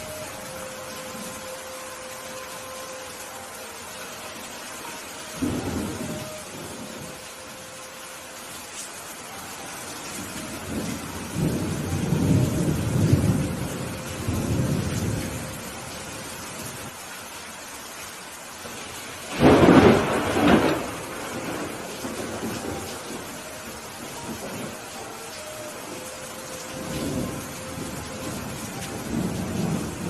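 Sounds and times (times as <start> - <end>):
steady rain: 0.0 - 30.0
thunder rumbling: 5.3 - 7.4, 10.1 - 16.9, 18.6 - 25.0, 25.7 - 30.0.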